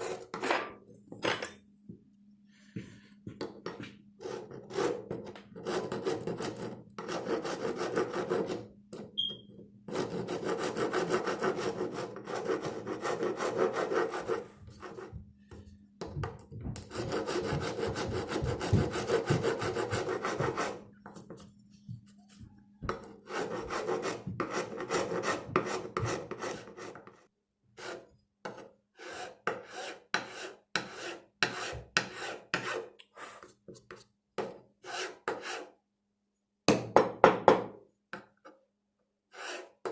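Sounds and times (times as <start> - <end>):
rasp filing wood: 4.2 - 8.7, 9.9 - 15.2, 16.9 - 20.8, 23.2 - 27.2, 27.8 - 33.5, 34.8 - 35.7, 39.3 - 39.9.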